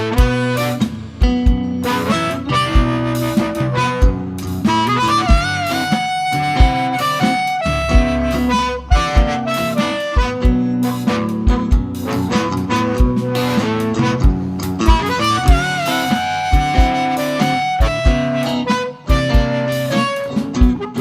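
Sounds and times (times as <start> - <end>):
guitar: 0.0 - 21.0
harmonica solo: 0.0 - 21.0
kick drum beat: 7.6 - 9.6, 14.2 - 17.2, 17.8 - 18.4, 19.1 - 19.6.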